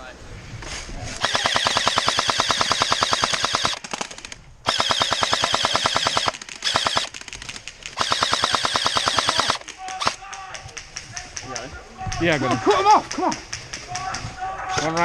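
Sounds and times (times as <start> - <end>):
electric gun firing bursts: 1.2 - 10.2.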